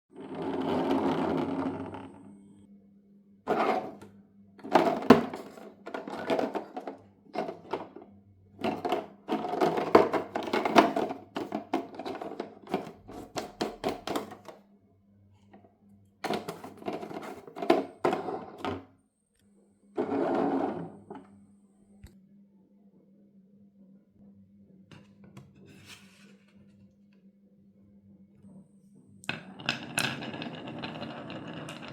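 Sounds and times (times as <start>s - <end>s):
marbles rolling down wooden run: 0.2s - 2.1s, 29.3s - 31.9s.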